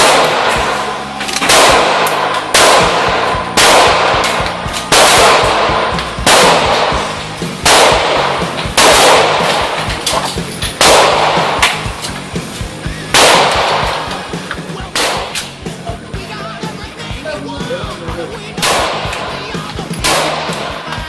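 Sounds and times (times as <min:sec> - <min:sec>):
pistol shots with echo: 0:00.0 - 0:12.0, 0:13.1 - 0:15.5, 0:18.6 - 0:19.4, 0:20.0 - 0:20.9.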